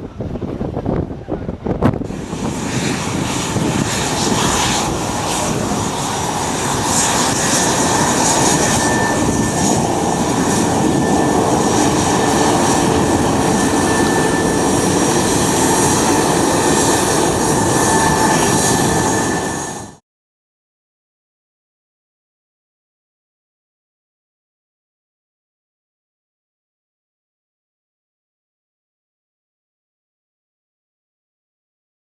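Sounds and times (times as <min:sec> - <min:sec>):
airplane engines running: 0:00.0 - 0:20.0.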